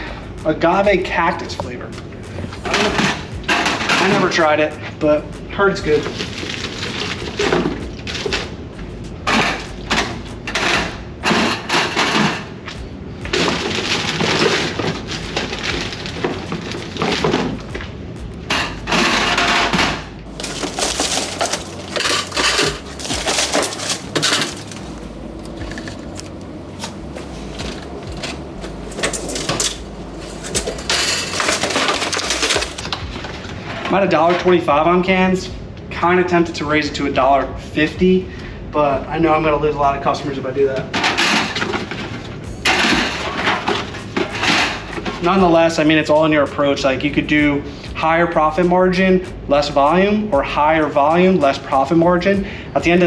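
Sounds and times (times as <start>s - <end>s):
glass bottles clinking: 18.6s - 32.9s.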